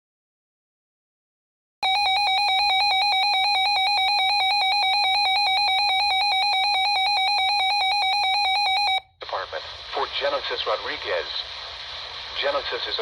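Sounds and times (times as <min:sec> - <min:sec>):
pulsing electronic alarm beep: 0:01.8 - 0:09.0.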